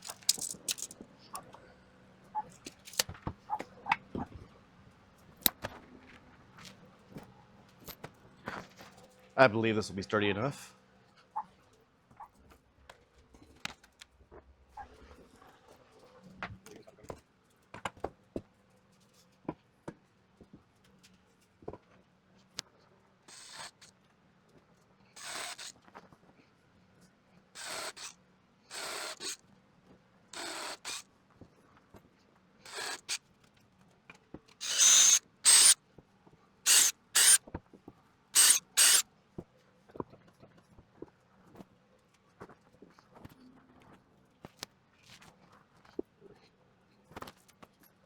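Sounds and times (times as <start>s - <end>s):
short bursts of hissing: 34.6s - 35.8s, 36.7s - 37.4s, 38.4s - 39.0s.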